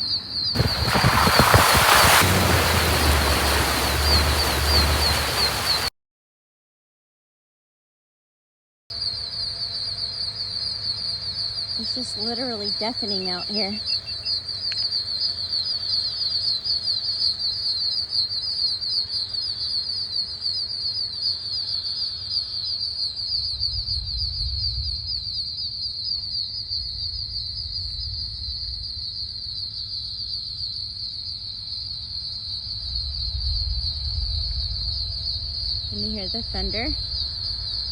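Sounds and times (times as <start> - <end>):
insects buzzing chorus: 0.0 - 5.9, 9.0 - 23.9, 24.9 - 37.9
distant thunder rumbling: 0.6 - 5.9, 33.2 - 37.9.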